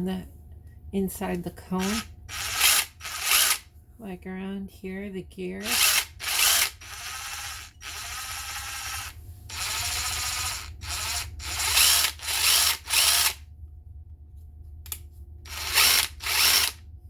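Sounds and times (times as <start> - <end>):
impact wrench running rough: 1.8 - 3.6, 5.6 - 13.4, 15.5 - 16.8.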